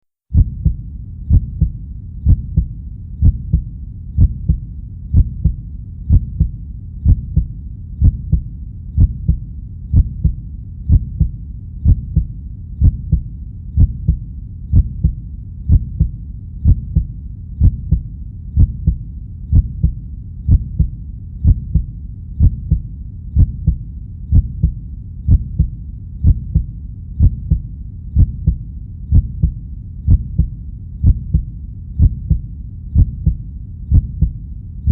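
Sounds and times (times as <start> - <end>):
heartbeat thumps: 0.3 - 34.9
continuous low rumble: 0.4 - 34.9.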